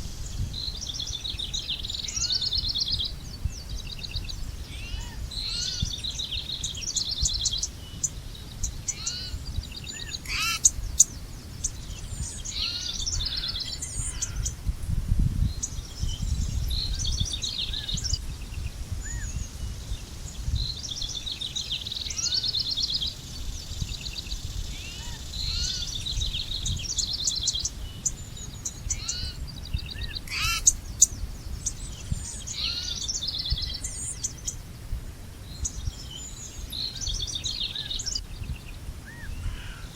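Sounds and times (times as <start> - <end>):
birds singing and chirping: 0.0 - 39.9.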